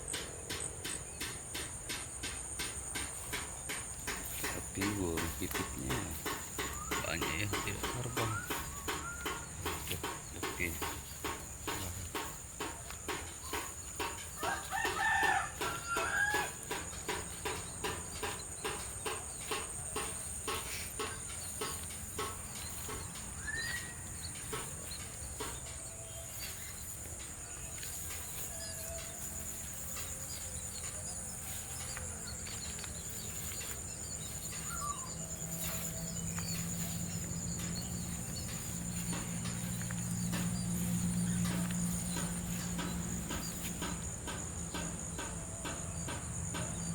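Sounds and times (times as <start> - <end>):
high-pitched insect drone: 0.1 - 46.9
rooster crowing: 13.6 - 17.8, 27.4 - 33.6.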